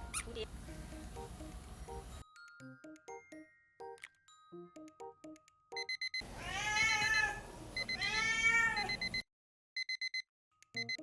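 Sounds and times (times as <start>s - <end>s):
alarm clock beeping: 5.7s - 6.2s, 7.1s - 8.1s, 8.8s - 9.2s, 9.8s - 10.2s, 10.8s - 11.0s
cat meowing: 6.4s - 9.0s.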